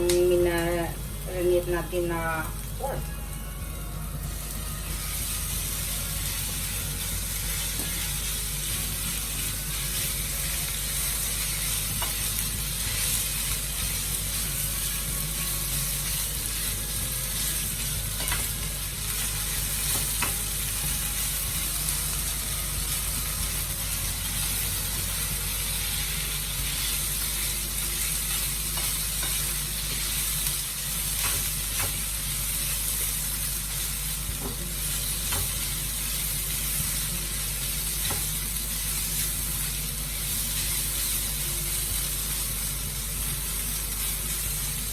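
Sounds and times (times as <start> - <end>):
meat sizzling in hot oil: 0.0 - 44.9.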